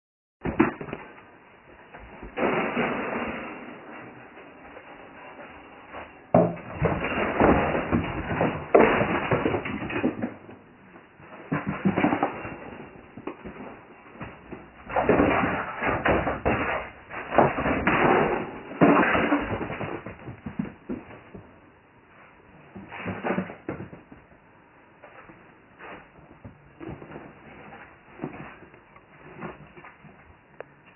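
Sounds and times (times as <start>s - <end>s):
cat scrambling with thumps and bangs: 6.0s - 21.5s.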